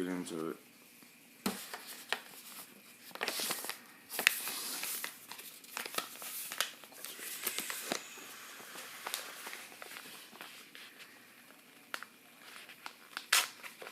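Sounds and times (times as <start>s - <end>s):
paper tearing and crinkling: 1.7s - 8.1s, 11.9s - 13.9s.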